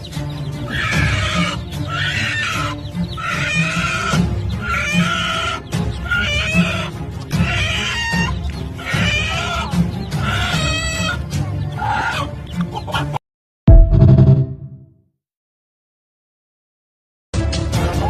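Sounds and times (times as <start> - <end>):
music with steady beat: 13.7 - 14.8.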